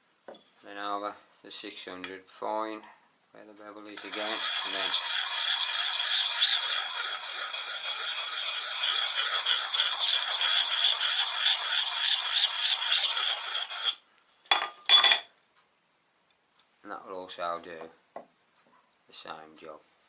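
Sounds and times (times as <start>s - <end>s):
scraper rasping on sharpening card: 4.0s - 14.0s
short scraper strokes: 4.0s - 14.0s.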